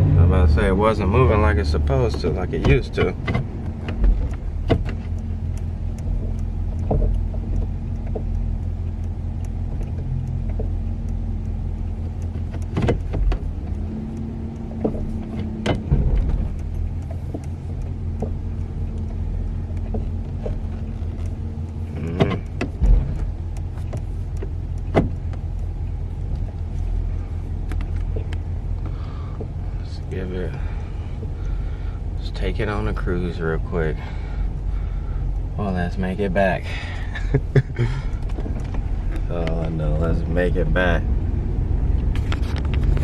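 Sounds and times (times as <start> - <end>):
car engine idling: 0.0 - 43.0
clicks and knocks inside car: 0.6 - 33.9, 34.5 - 41.0.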